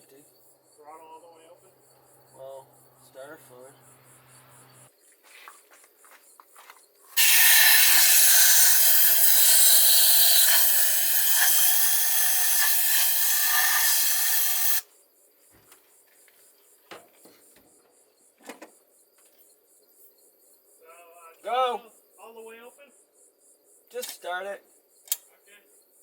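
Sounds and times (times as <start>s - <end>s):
aerosol spray hiss: 7.2s - 14.8s.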